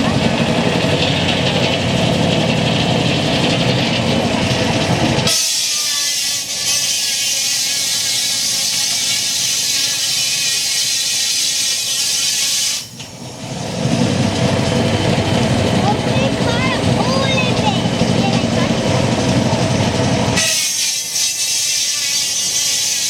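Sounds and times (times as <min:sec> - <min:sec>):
sawmill machinery rumbling: 0:00.0 - 0:23.0
loud steam hiss: 0:05.2 - 0:13.0, 0:20.4 - 0:23.0.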